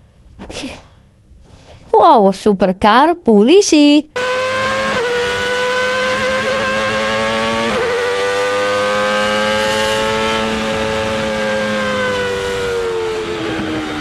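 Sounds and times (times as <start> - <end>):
race car engine whine: 4.2 - 14.0.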